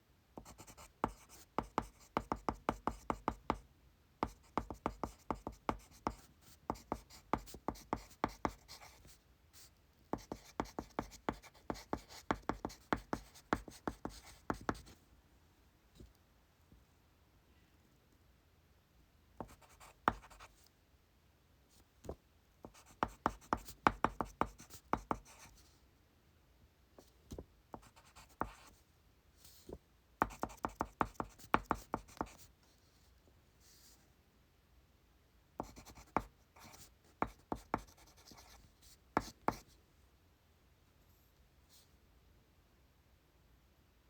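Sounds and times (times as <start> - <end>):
pencil writing on paper: 0.4 - 3.6, 4.2 - 9.2, 10.2 - 14.9, 19.4 - 20.5, 22.6 - 25.5, 27.8 - 28.7, 30.2 - 32.4, 35.6 - 38.6.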